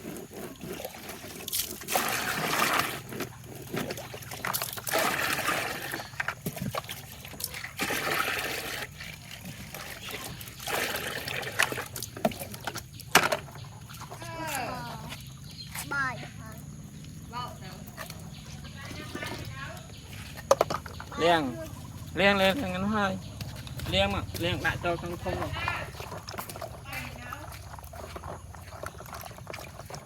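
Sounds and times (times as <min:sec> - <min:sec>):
water splashing and trickling: 0:00.0 - 0:30.0.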